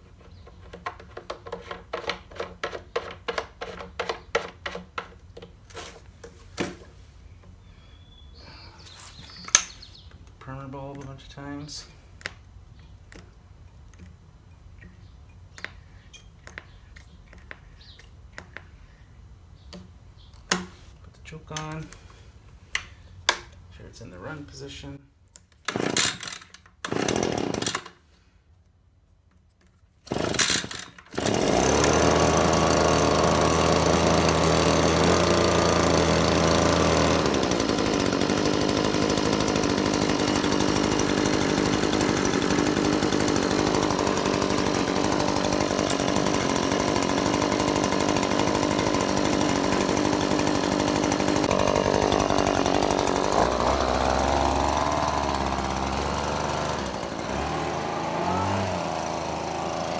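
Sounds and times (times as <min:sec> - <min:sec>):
leaf blower engine running: 0:25.7 - 0:26.2, 0:26.9 - 0:27.8, 0:30.1 - 0:59.9.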